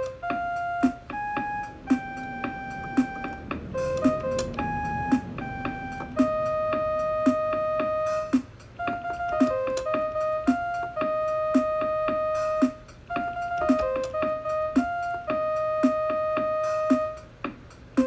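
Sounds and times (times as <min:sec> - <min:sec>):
steady drum beat: 0:00.0 - 0:15.2
mini keyboard melody: 0:00.0 - 0:18.0.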